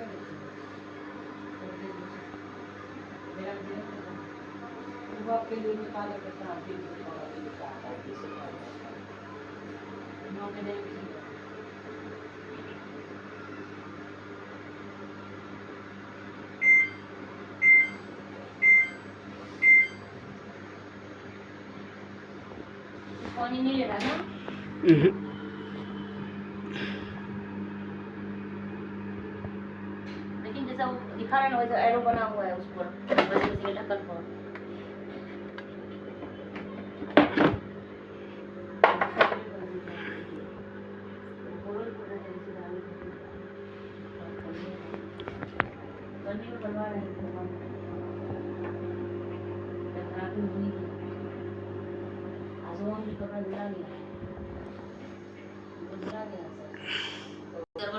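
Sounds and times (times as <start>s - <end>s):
steady low hum: 16.4s - 57.9s
washing machine short high beeps: 16.6s - 17.0s, 17.6s - 20.1s.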